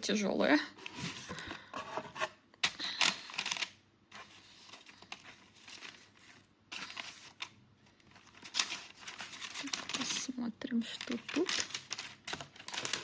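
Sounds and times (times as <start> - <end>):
cardboard packaging rustling: 0.8 - 13.0.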